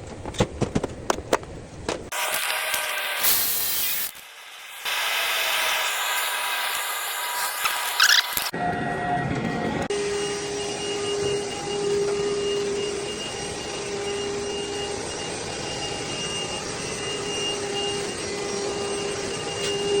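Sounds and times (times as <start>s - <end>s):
machine hum: 4.9s - 20.0s
faint high whine: 7.7s - 20.0s.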